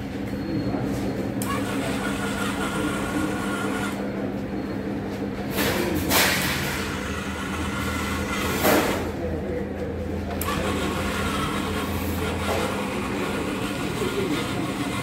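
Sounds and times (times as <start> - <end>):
model car motors humming: 1.4 - 4.0, 10.4 - 15.0.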